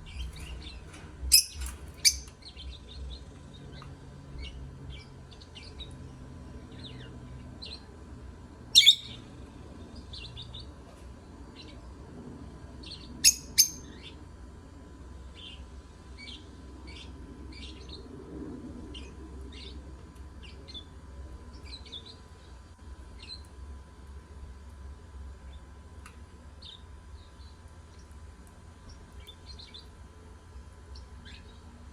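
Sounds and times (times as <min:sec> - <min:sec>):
lovebirds chirping: 0:00.0 - 0:07.9, 0:08.7 - 0:10.7.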